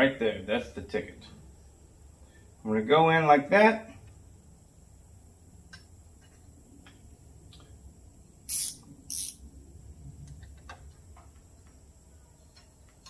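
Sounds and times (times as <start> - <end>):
short scraping hisses: 8.5 - 9.4.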